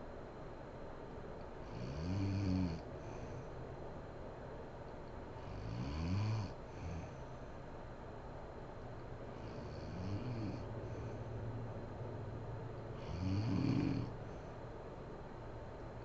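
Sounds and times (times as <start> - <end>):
steady background hiss: 0.0 - 16.0
woman snoring: 1.7 - 3.3, 5.4 - 7.3, 9.4 - 11.1, 13.0 - 14.2.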